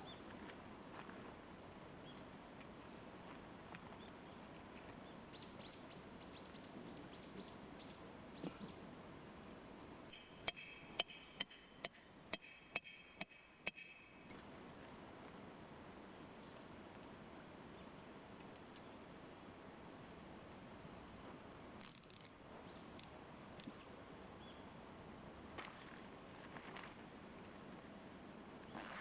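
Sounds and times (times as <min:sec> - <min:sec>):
bird chirping: 0:05.0 - 0:08.8.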